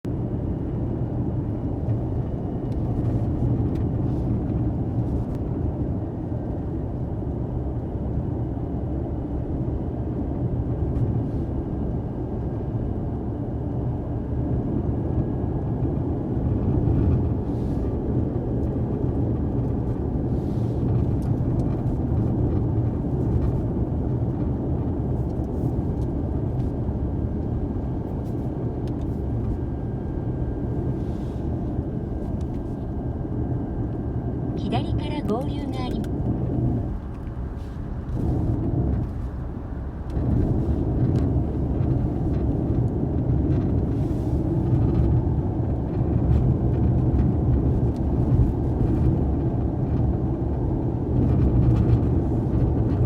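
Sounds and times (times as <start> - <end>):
car interior rumble: 0.1 - 53.0.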